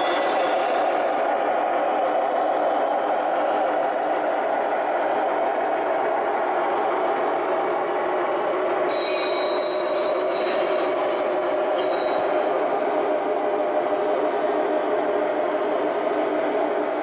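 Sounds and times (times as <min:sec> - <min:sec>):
model train running: 0:00.0 - 0:17.0
high thin squeal: 0:08.9 - 0:12.6.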